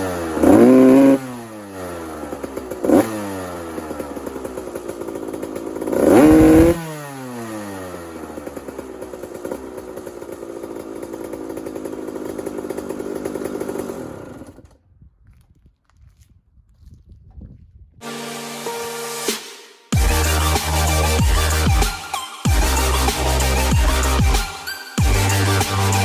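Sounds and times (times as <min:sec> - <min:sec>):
engine revving sharply: 0:00.0 - 0:04.6, 0:05.4 - 0:09.6, 0:20.0 - 0:26.0
two-stroke motorcycle engine idling: 0:00.0 - 0:14.7, 0:20.0 - 0:21.9, 0:22.5 - 0:26.0.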